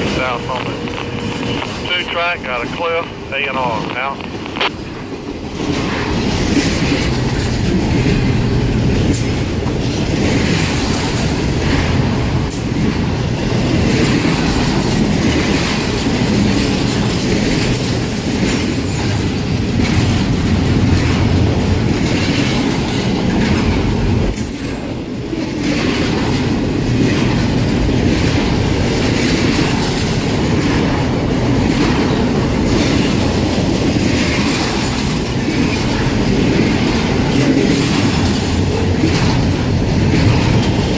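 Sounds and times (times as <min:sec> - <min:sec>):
train wheels rumbling: 0:00.0 - 0:40.9.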